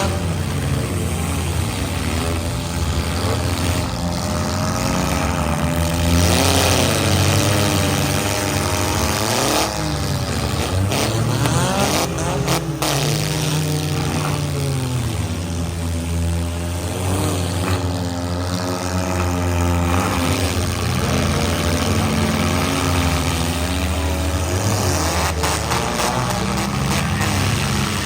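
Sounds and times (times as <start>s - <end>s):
car engines revving: 0.0s - 28.0s.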